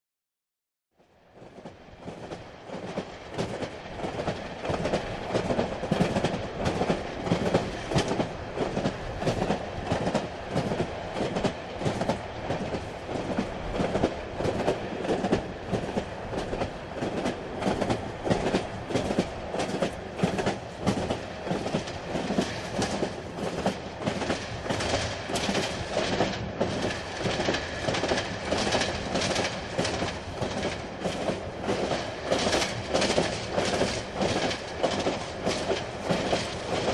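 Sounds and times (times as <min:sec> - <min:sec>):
train rumbling: 0:01.1 - 0:36.9
wheels clacking on track: 0:02.1 - 0:36.9.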